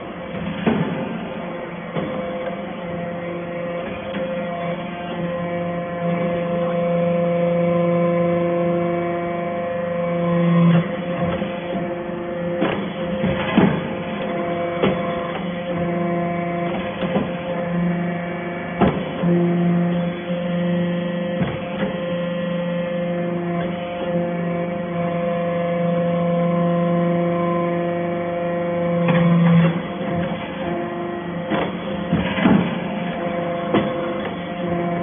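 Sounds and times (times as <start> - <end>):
baler motor and pump hum: 0.0 - 35.0
constant machine tones: 0.0 - 35.0.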